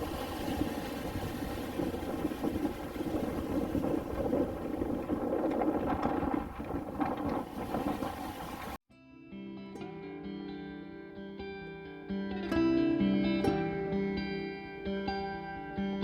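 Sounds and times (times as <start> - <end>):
car engine and road noise: 0.0 - 8.8.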